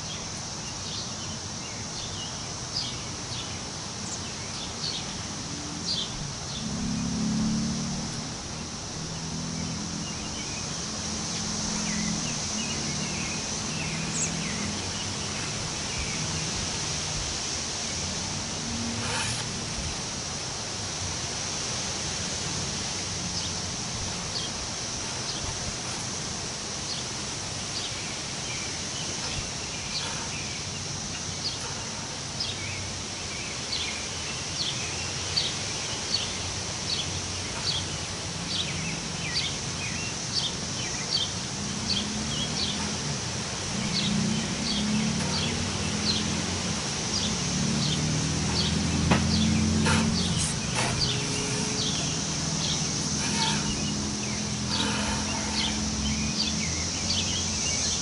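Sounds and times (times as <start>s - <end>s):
birds chirping: 0.0s - 20.4s, 22.4s - 58.0s
wind rustling leaves: 0.0s - 58.0s
faint low drone: 4.9s - 10.7s, 41.1s - 57.8s.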